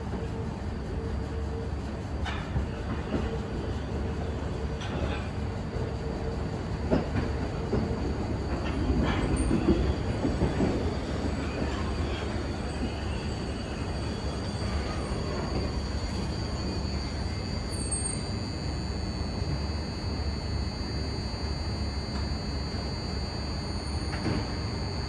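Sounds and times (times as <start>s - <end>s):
train wheels knocking on rail joints: 4.6s - 17.4s, 23.3s - 24.7s
wheel squeal: 8.6s - 18.6s.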